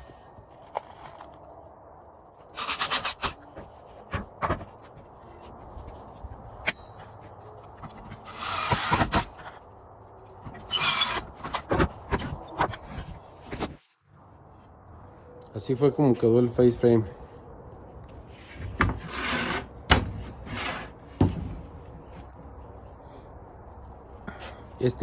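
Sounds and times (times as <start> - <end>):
wood scraping on wood: 2.4 - 9.6, 18.4 - 19.7, 20.3 - 21.2.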